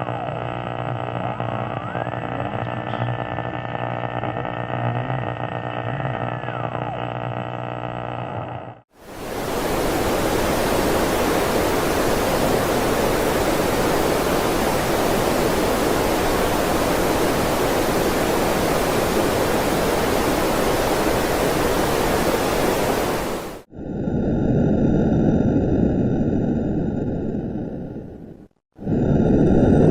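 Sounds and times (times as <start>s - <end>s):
drone with banded tones: 0.0s - 8.8s
steady rushing noise: 9.0s - 29.9s.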